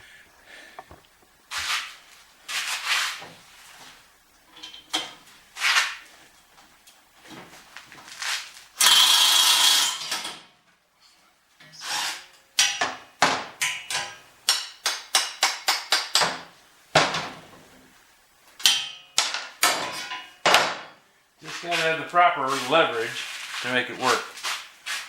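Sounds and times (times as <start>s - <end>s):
sharp knocks on metal: 12.6s - 17.4s, 18.7s - 21.0s.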